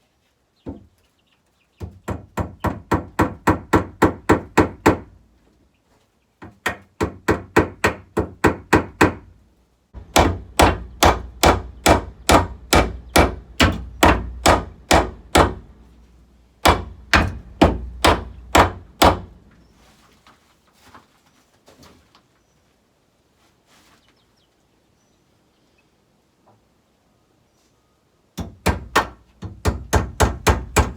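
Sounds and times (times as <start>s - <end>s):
hammer driving nails into wood: 1.9s - 5.1s, 6.4s - 9.3s, 10.0s - 15.8s, 16.6s - 19.4s, 28.4s - 30.9s.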